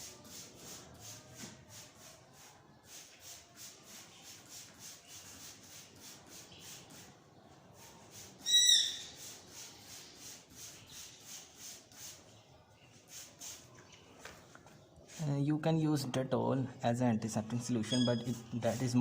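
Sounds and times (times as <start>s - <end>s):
spray bottle squirts: 7.8s - 12.4s, 13.0s - 14.8s
high-pitched squeak: 17.8s - 18.6s.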